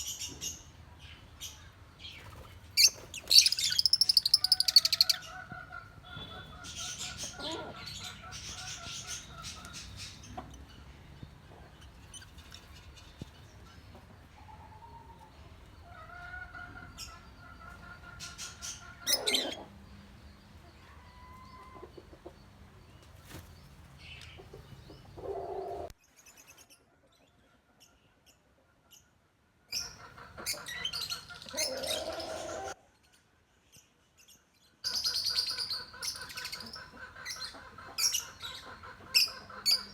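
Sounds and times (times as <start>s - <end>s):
lovebirds chirping: 1.4s - 26.7s.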